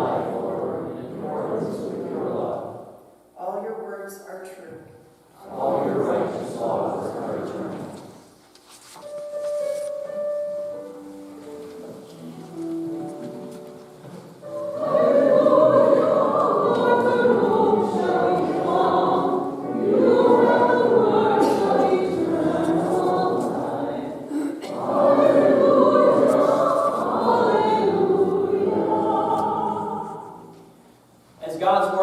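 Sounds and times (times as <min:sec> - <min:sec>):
group singing a slow hymn: 0:00.0 - 0:03.1, 0:05.4 - 0:08.4, 0:12.5 - 0:31.1
held instrument notes: 0:09.0 - 0:31.0.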